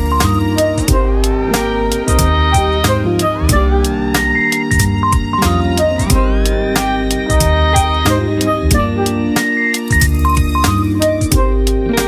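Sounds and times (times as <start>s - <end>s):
instrumental background music: 0.0s - 12.0s.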